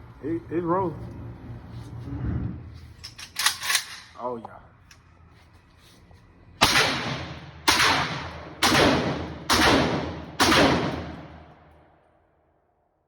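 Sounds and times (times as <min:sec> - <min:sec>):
echoing gunshots: 0:06.6 - 0:11.7.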